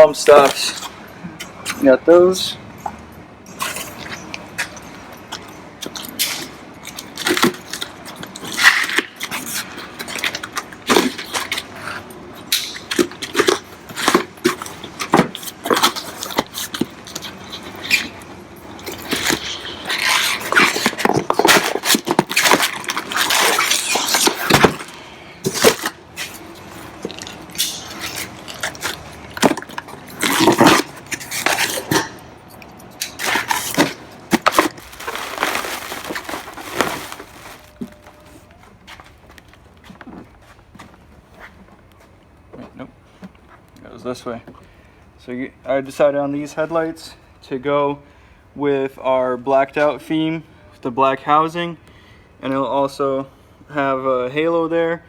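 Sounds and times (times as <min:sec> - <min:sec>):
packaging rustling: 0:33.2 - 0:39.6.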